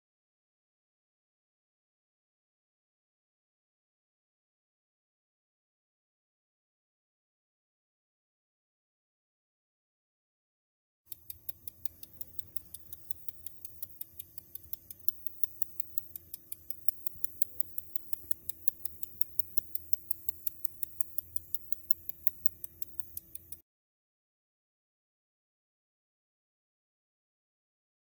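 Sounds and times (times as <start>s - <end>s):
faint steady hum: 11.1s - 23.6s.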